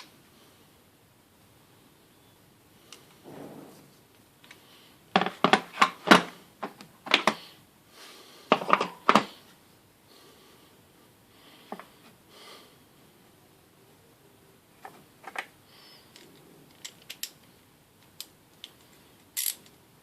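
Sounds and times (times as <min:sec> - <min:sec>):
tool kit pieces clicking and knocking: 0:19.4 - 0:19.8.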